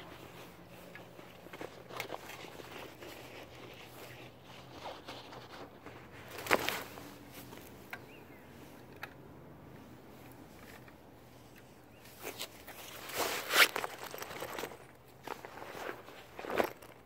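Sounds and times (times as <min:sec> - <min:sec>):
rustling while rummaging: 0:00.0 - 0:08.8, 0:09.8 - 0:17.0.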